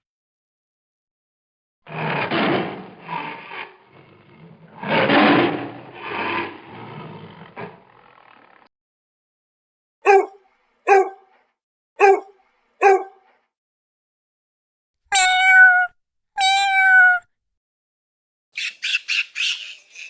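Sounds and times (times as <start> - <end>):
rough animal call: 10.1 - 11.2, 12.0 - 13.2, 15.1 - 17.2
short dog barks: 10.1 - 11.3, 12.0 - 13.2.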